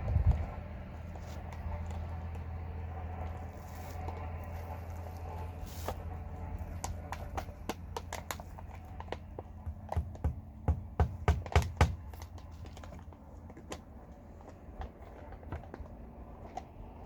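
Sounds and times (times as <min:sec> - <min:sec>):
steady low hum: 0:00.0 - 0:11.3
irregular knocks and taps: 0:06.8 - 0:13.8.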